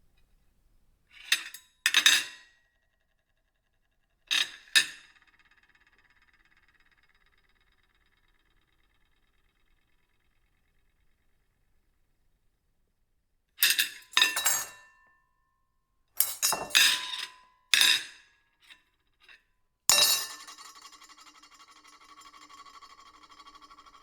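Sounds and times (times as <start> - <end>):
ceramic plates clinking: 14.2 - 14.8, 16.2 - 17.1.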